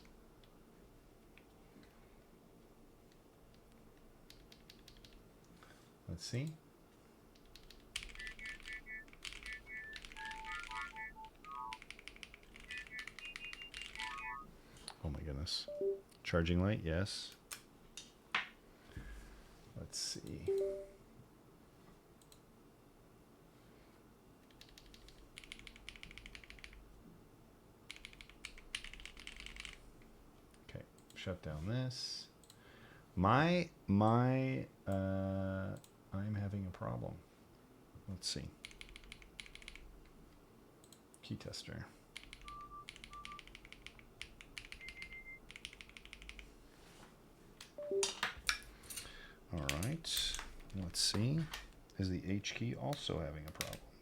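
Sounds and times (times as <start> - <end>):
typing on a mechanical keyboard: 4.3 - 5.2, 7.4 - 14.2, 24.5 - 26.8, 27.9 - 29.8, 38.6 - 39.9, 42.2 - 46.5, 52.9 - 53.8
brief high beep: 15.7 - 16.0, 20.5 - 21.0, 47.8 - 48.1.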